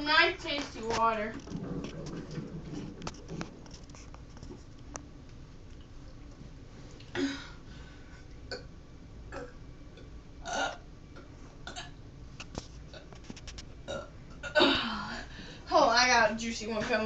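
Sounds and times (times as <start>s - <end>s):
girl burping: 7.2s - 7.5s, 10.4s - 10.8s, 13.9s - 15.2s.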